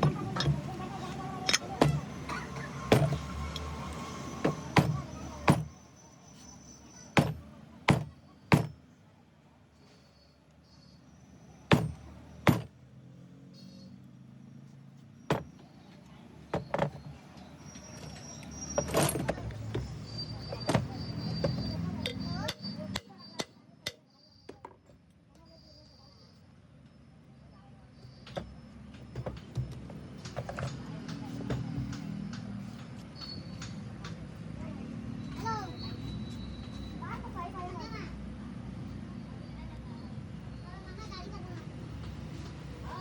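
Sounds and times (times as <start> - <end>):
tools knocking on metal: 2.9 - 3.3, 4.4 - 5.7, 7.2 - 8.8, 11.7 - 12.7, 15.3 - 15.5, 16.5 - 17.1.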